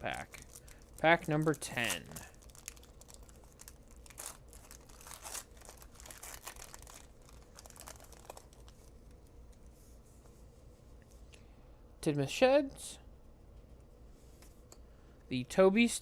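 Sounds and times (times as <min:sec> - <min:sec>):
wrapper crinkling and tearing: 0:00.0 - 0:08.9.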